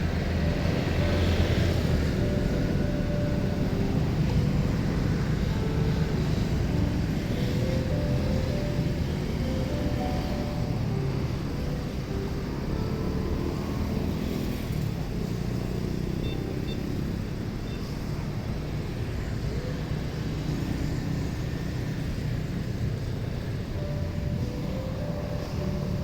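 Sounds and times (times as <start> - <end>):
low engine rumble: 0.0 - 16.8, 22.4 - 26.0.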